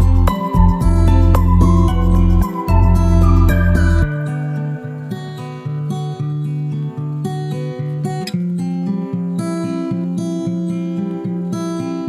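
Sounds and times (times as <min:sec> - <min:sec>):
gentle new-age music: 0:00.0 - 0:07.2.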